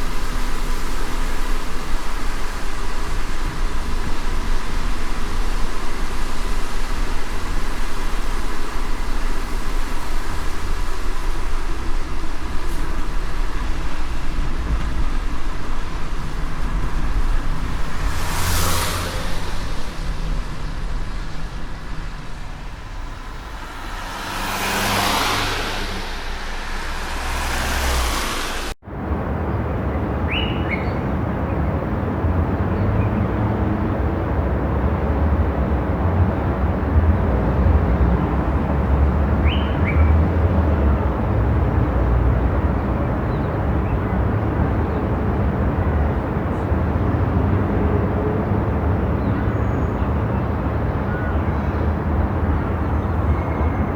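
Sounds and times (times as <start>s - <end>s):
hiss: 0.0s - 28.8s
car and road rumble: 0.0s - 53.9s.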